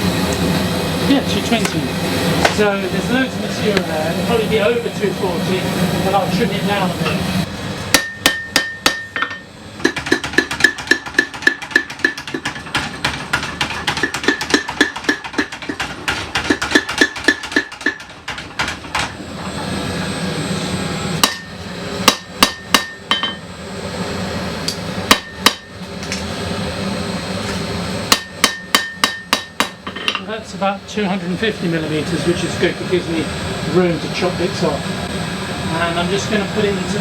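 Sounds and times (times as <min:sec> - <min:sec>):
mechanical hum: 0:00.0 - 0:37.0
power hammer striking steel: 0:07.9 - 0:19.2, 0:21.2 - 0:23.5, 0:24.6 - 0:26.2, 0:28.1 - 0:30.3.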